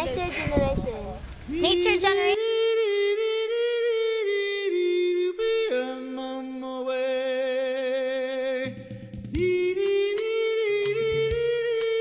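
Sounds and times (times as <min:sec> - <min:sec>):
voices singing held notes: 0:01.3 - 0:12.0
lower voice singing harmony: 0:01.5 - 0:08.8.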